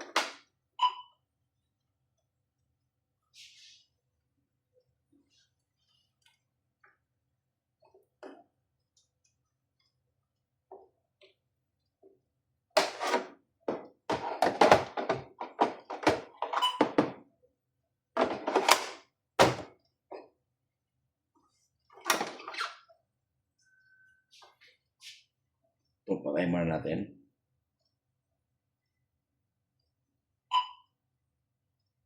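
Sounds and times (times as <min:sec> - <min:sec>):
hard objects knocking and clattering: 0:12.8 - 0:17.2, 0:18.2 - 0:19.7.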